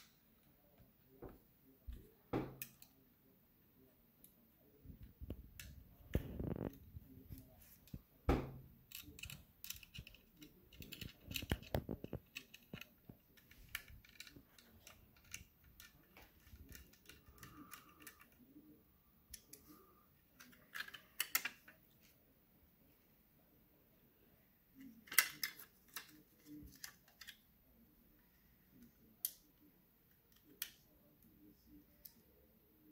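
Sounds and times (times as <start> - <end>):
light clicks taps and scrapes: 4.2 - 8.1, 8.8 - 22.2, 24.8 - 27.4, 28.2 - 32.3.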